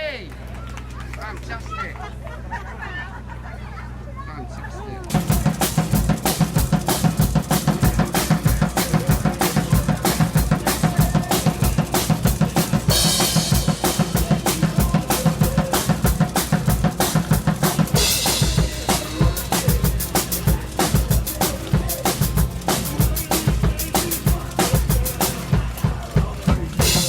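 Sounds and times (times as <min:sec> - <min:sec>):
cymbal crash: 0:05.1 - 0:23.7
fast heavy metal drumbeat: 0:05.1 - 0:27.0.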